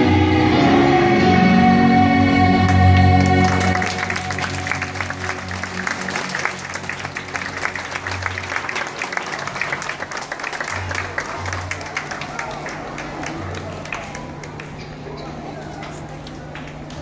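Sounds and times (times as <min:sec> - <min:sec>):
song with backing music: 0:00.0 - 0:07.9
audience applause: 0:02.7 - 0:15.2.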